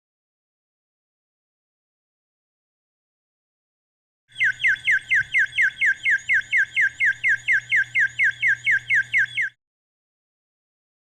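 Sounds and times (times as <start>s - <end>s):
alarm clock chirping: 4.3s - 9.6s.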